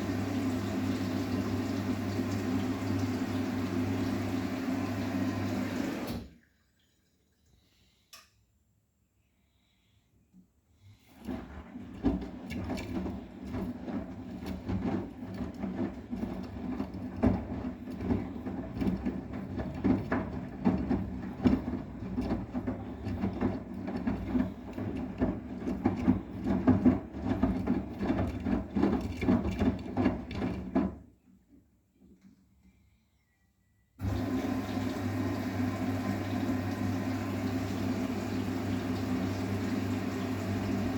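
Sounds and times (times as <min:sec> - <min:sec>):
washing machine drum humming: 0:00.0 - 0:06.5, 0:11.1 - 0:31.1, 0:34.0 - 0:40.9
washing machine clicks and knocks: 0:11.3 - 0:31.0.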